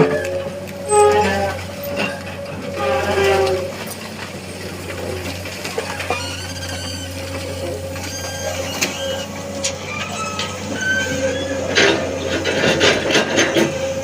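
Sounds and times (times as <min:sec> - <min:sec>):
excavator engine running: 0:00.0 - 0:14.0
short high squeaks: 0:00.8 - 0:03.7, 0:05.7 - 0:11.6.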